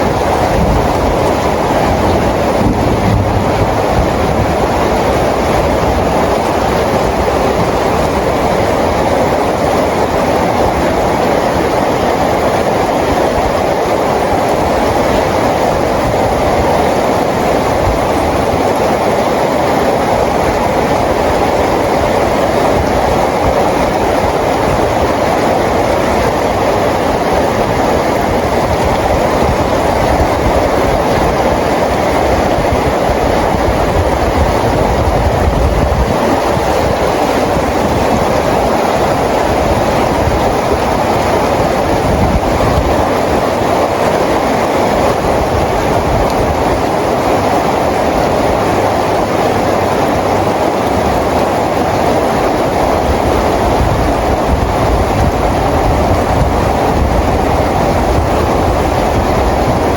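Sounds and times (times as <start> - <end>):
rain falling steadily: 0.0 - 59.9.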